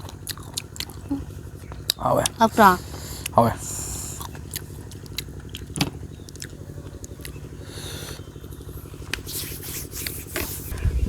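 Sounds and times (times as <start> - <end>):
person chewing and mouth smacks: 0.0 - 2.4, 4.0 - 7.4
steady low hum: 0.0 - 11.0.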